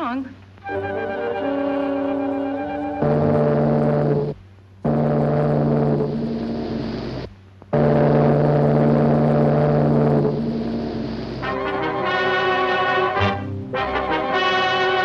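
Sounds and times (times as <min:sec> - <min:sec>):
orchestral music: 0:00.6 - 0:03.1, 0:11.4 - 0:15.0
steamship whistle blasts: 0:00.6 - 0:04.1, 0:11.4 - 0:15.0.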